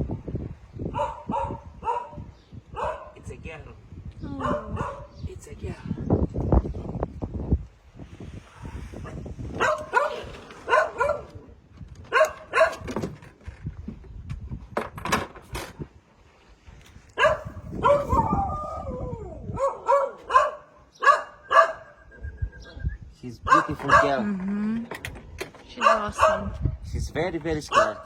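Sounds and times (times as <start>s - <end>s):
dog barking: 0.9s - 3.2s, 4.4s - 5.2s, 9.6s - 11.4s, 12.1s - 12.9s, 17.2s - 18.4s, 19.5s - 22.0s, 23.5s - 24.2s, 25.8s - 26.6s, 27.7s - 28.0s.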